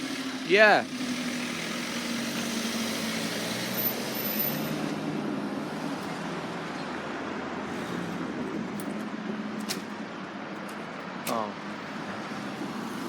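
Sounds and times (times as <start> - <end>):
vehicle engines running: 0.0 - 13.0.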